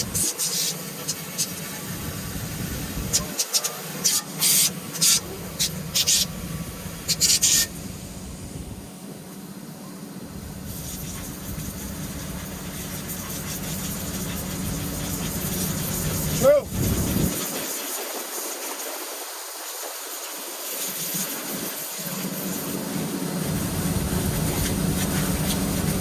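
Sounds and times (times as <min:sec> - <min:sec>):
pressurized water spray bursts: 0:00.0 - 0:08.8, 0:10.4 - 0:26.0
low machine hum: 0:04.8 - 0:17.3, 0:22.9 - 0:26.0.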